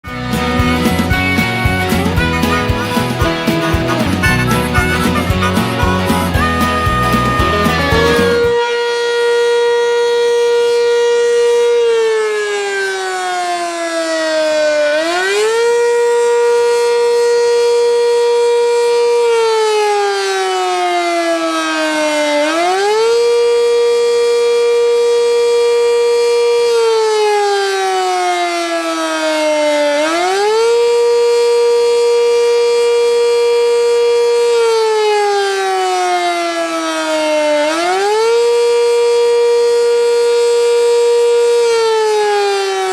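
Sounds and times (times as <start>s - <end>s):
outdoor warning siren wail: 0.0s - 42.9s.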